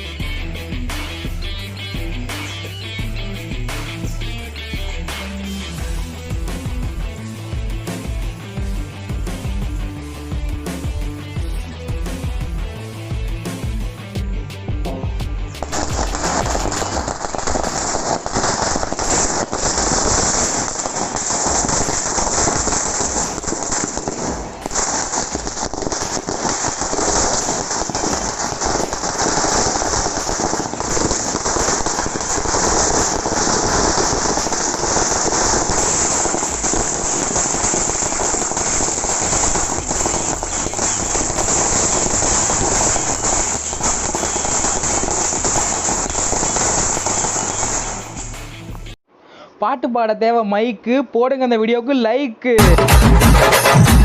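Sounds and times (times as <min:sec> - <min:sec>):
firecracker string bursting: 0:15.5 - 0:48.5, 0:52.6 - 0:54.0.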